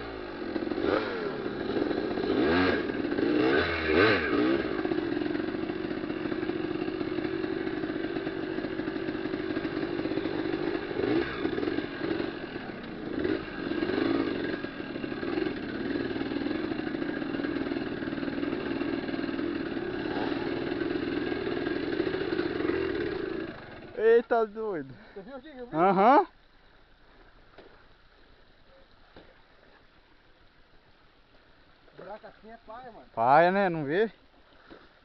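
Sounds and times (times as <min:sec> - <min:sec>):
motorcycle engine revving: 0:00.0 - 0:24.8.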